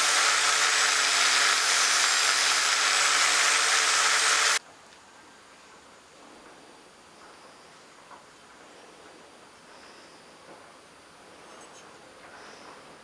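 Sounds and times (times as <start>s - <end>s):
electric power tool running: 0.0s - 4.6s.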